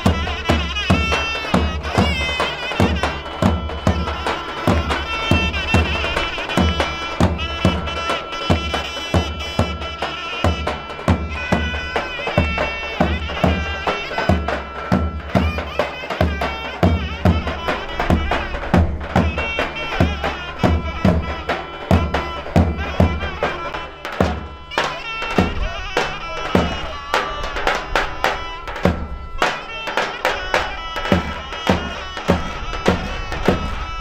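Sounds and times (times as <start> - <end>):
reedy wind instrument melody: 0.0 - 34.0
steady drum beat: 0.0 - 34.0.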